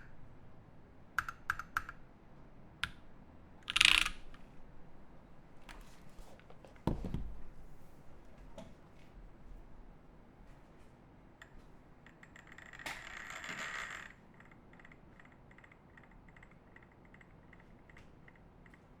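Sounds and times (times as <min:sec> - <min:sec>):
mechanical keyboard typing: 0:01.2 - 0:02.0, 0:03.6 - 0:04.4.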